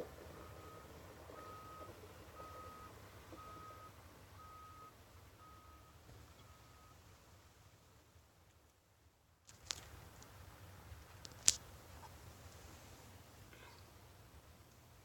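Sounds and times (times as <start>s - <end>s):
vehicle reversing alarm beeps: 0.0s - 7.3s.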